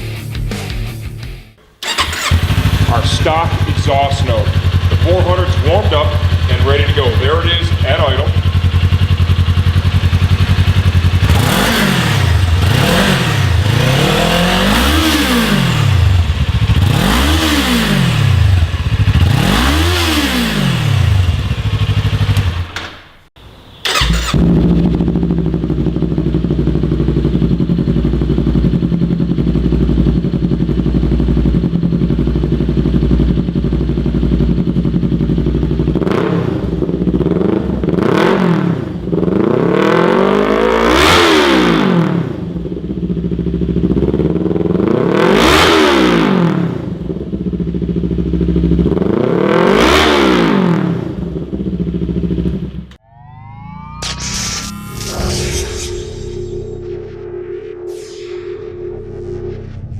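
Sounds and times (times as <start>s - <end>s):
motorcycle engine idling: 1.8s - 22.8s, 23.8s - 38.0s, 42.4s - 45.1s, 46.6s - 49.4s, 50.8s - 53.0s
motorcycle engine revving: 1.8s - 23.0s, 23.8s - 53.0s.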